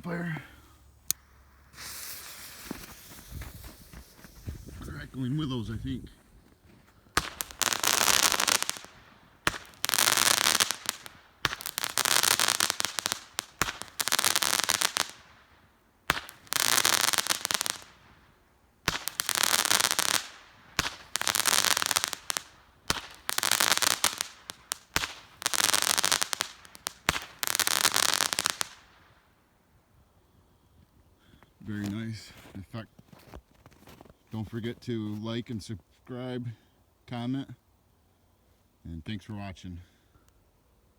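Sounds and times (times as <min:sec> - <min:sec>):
firework crackling: 0:01.1 - 0:05.6, 0:07.1 - 0:29.2
firework launch thumps: 0:01.7 - 0:04.9.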